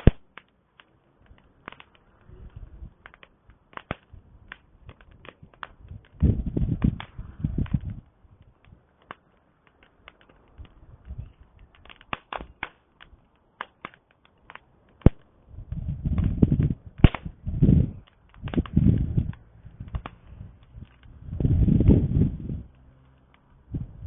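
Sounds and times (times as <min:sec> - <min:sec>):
campfire crackling and popping: 0:00.0 - 0:24.0
fire snapping loudly: 0:00.0 - 0:24.0
low rumble bursts: 0:05.8 - 0:08.5, 0:15.4 - 0:24.0.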